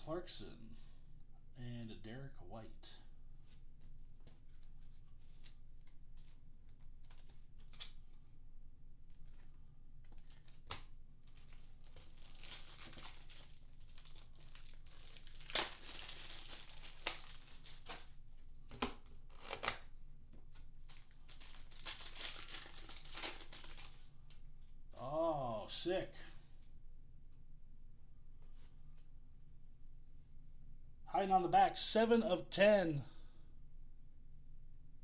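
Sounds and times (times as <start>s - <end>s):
cards and packaging clicking: 6.2s - 8.2s, 9.1s - 19.9s, 20.5s - 24.4s
foil packs tearing and crinkling: 10.2s - 18.1s, 19.2s - 19.9s, 20.8s - 24.0s.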